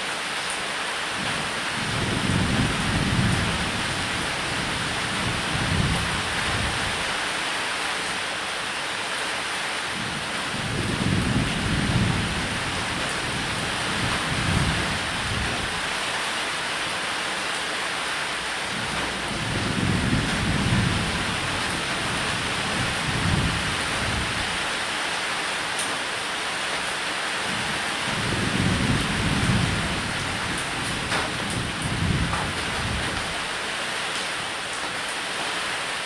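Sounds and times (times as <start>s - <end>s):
rain on a roof: 0.0s - 36.0s
thunder rumbling: 1.8s - 7.0s, 10.0s - 16.0s, 18.5s - 24.7s, 27.5s - 33.6s.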